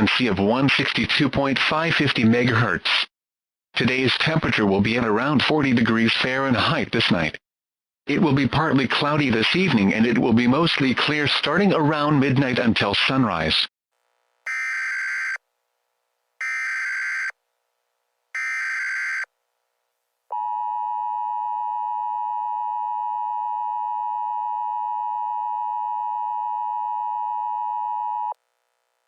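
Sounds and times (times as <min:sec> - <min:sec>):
emergency alert attention tone: 0:14.5 - 0:15.4, 0:16.4 - 0:17.4, 0:18.4 - 0:19.3
buzzing data bursts: 0:18.4 - 0:19.2.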